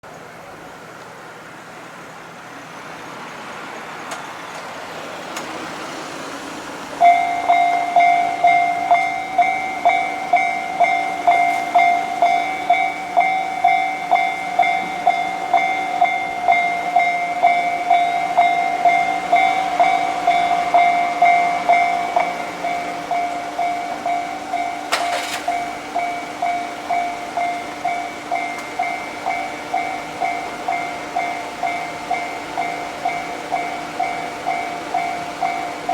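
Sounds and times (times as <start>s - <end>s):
railroad crossing bell clanging: 6.8s - 35.9s
rising rush of noise: 17.9s - 24.6s.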